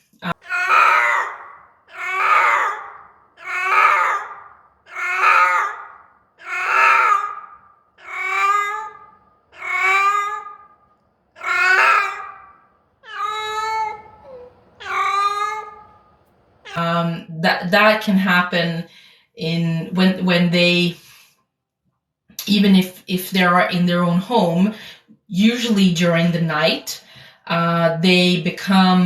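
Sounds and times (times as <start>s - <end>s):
cat yowling: 0.4s - 16.8s.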